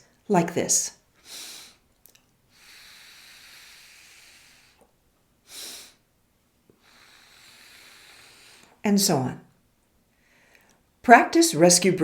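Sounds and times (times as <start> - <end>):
sniff through the nose: 1.2 - 1.8, 5.5 - 6.0
air blown through pursed lips: 1.2 - 1.9, 2.5 - 6.1, 6.7 - 8.8.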